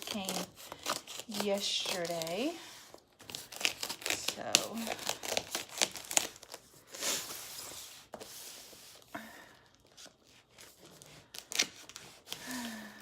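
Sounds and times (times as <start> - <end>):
package tearing: 0.0 - 7.4, 9.8 - 12.6
wrapping crinkling and rustling: 0.0 - 13.0.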